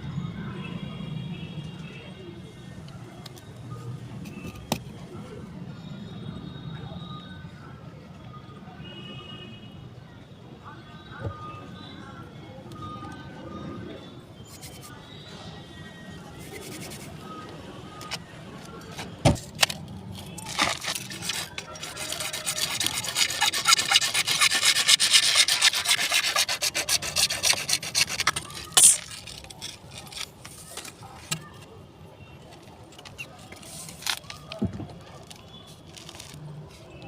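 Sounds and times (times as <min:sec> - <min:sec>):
knocks and scrapes: 0:18.9 - 0:31.4
hand tool rasping: 0:20.4 - 0:30.6.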